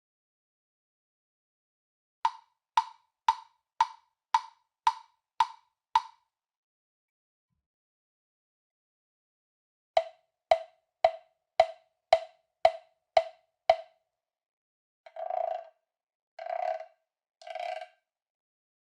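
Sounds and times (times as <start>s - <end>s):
plastic block struck with stick: 2.3s - 6.2s, 10.0s - 13.9s.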